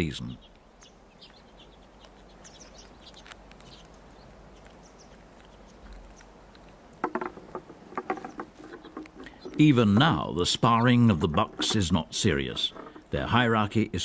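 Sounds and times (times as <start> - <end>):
small bird chirps: 0.0 - 10.8
faint outdoor air: 0.0 - 14.0.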